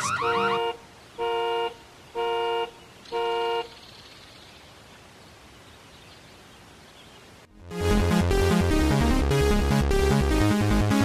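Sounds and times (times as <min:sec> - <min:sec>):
car alarm honking tones: 0:00.0 - 0:03.7
faint steady hiss: 0:00.6 - 0:07.5.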